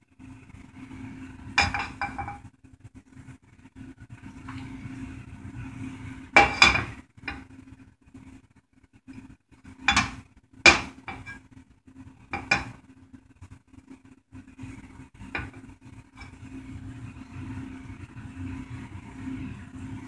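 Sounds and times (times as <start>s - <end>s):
low steady hum: 0.0s - 20.0s
pots and pans clattering: 1.6s - 2.4s, 6.4s - 7.5s, 9.8s - 11.4s, 12.3s - 12.8s.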